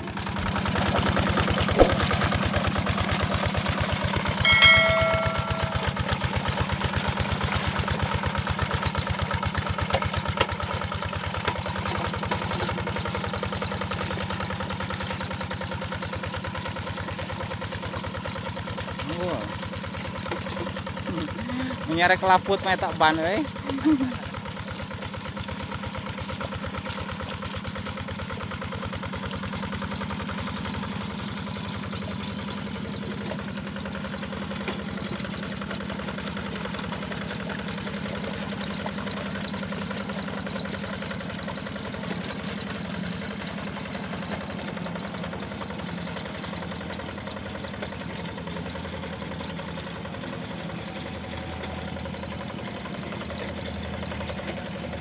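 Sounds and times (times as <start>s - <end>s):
diesel engine chugging: 0.0s - 55.0s.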